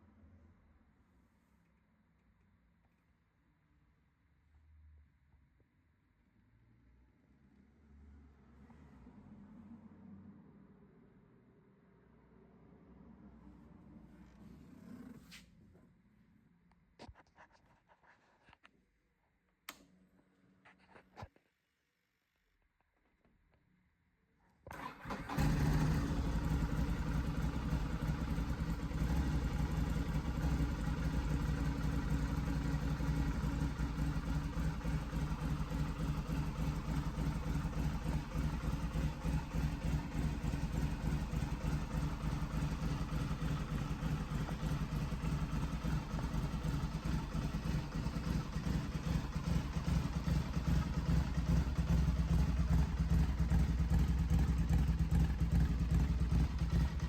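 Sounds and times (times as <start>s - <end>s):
motorcycle engine starting and idling: 24.7s - 57.0s.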